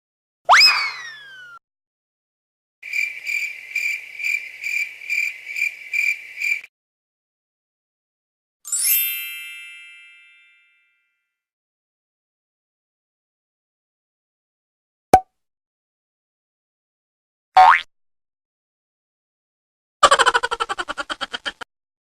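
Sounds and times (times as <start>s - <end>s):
cricket chirping effect: 2.8s - 6.7s
boing sound effect: 17.6s - 17.9s.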